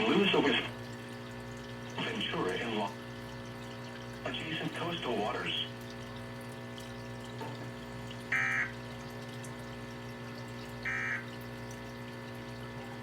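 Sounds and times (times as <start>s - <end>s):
radio hum and hiss: 0.0s - 0.8s, 1.9s - 3.0s, 4.2s - 5.8s
digital data tone bursts: 8.3s - 8.7s, 10.8s - 11.3s.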